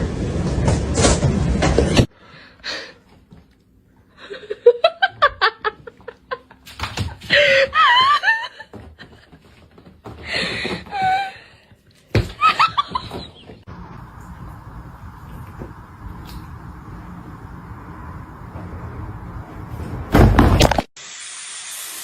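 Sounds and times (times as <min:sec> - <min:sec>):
person laughing: 0:04.2 - 0:06.6, 0:07.2 - 0:09.2.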